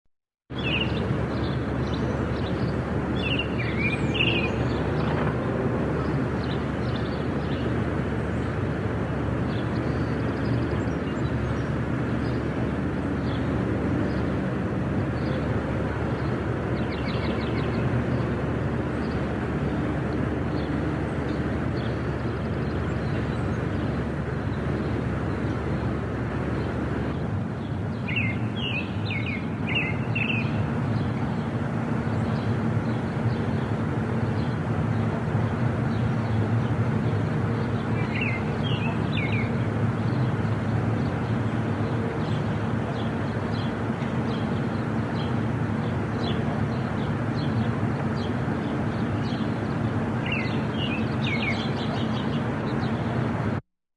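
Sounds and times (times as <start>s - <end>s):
birds chirping: 0.5s - 53.4s
rapid ticking bird call: 0.6s - 5.2s.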